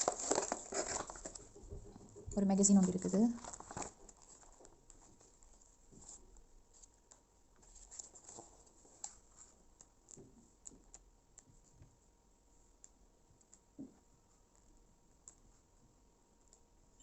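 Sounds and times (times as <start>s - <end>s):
magazine pages turning: 0.0s - 1.5s, 2.8s - 7.0s, 7.6s - 9.9s.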